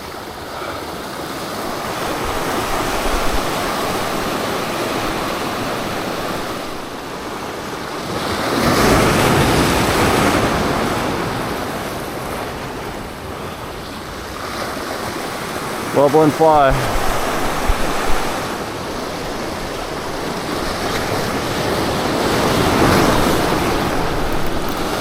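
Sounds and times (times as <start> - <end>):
ocean waves washing over rocks: 0.0 - 25.0.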